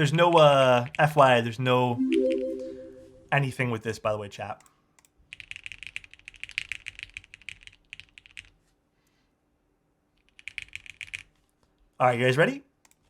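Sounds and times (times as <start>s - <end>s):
fast typing on mechanical keyboard: 5.3s - 8.6s, 10.2s - 11.5s.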